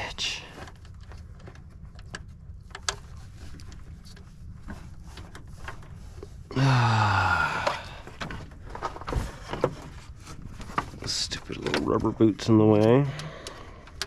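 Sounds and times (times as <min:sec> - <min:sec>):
man groaning: 0:06.5 - 0:08.1.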